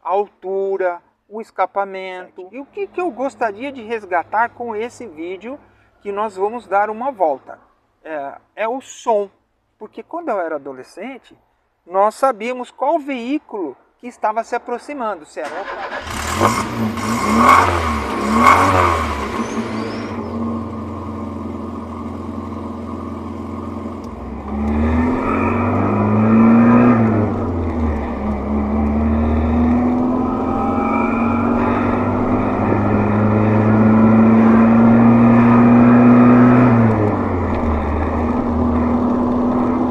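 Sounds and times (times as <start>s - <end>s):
car engine revving while driving: 15.9s - 39.9s.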